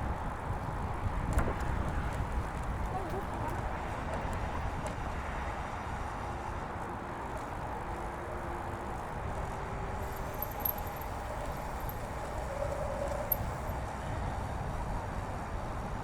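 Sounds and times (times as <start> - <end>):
wind: 0.0 - 16.0.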